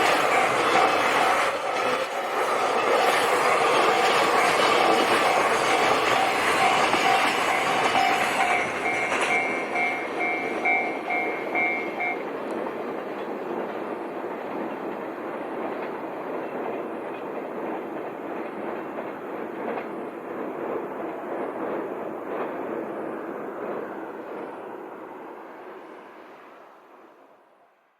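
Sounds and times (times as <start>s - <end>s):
crossing warning bell ringing: 0.0s - 12.3s
train rumbling: 0.0s - 27.9s.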